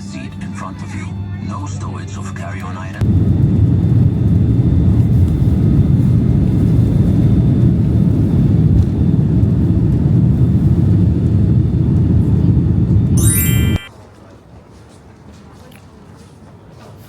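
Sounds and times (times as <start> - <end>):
jet airliner cabin rumble: 0.0 - 13.2.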